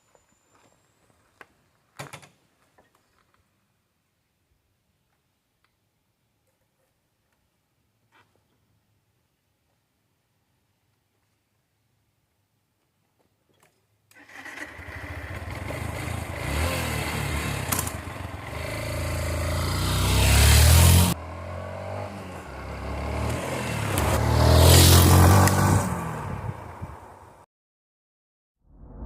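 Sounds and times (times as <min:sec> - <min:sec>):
engine revving: 0:14.6 - 0:26.5.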